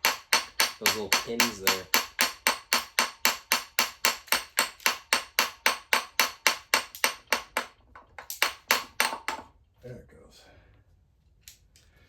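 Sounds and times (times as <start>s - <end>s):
small hammer tapping on metal: 0.0s - 9.5s.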